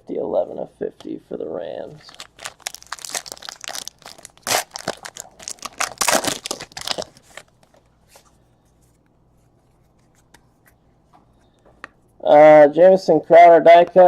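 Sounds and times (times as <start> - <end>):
plastic packaging crinkling and tearing: 2.0 - 7.9.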